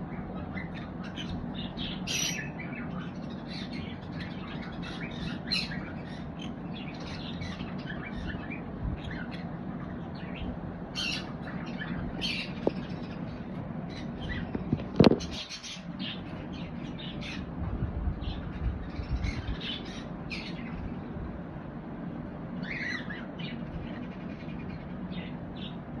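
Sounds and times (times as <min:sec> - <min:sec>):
parrot squawking and chirping: 0:00.3 - 0:13.3, 0:22.6 - 0:25.8.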